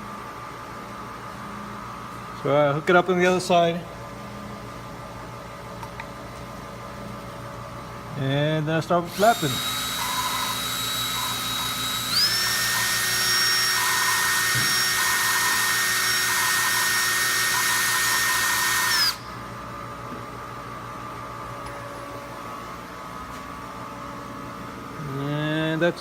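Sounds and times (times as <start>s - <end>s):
low shop hum: 0.0s - 26.0s
power drill motor whine: 9.1s - 19.4s.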